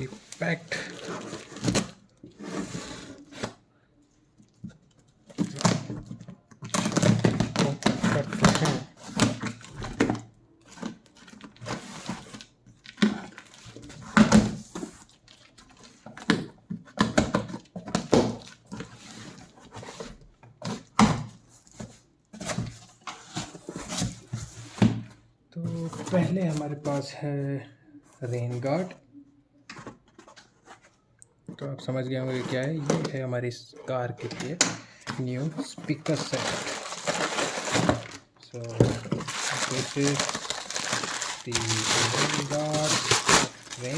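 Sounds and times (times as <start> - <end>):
packing tearing and rustling: 35.4 - 43.9.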